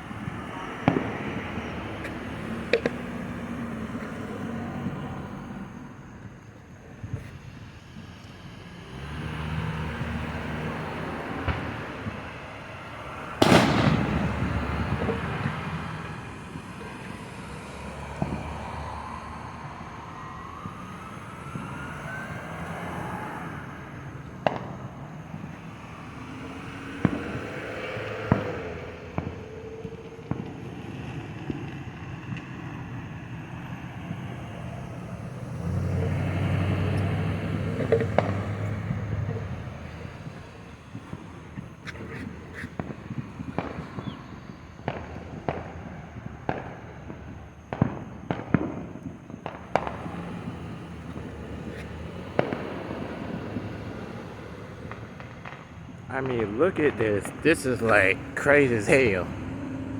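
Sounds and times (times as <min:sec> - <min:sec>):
firework cracks and pops: 0:00.0 - 0:05.6, 0:10.8 - 0:33.4, 0:36.4 - 0:59.4
loud firework bang: 0:00.3 - 0:03.1, 0:13.4 - 0:15.7, 0:24.4 - 0:25.0, 0:37.8 - 0:41.3, 0:46.5 - 0:53.8, 0:54.8 - 0:59.3.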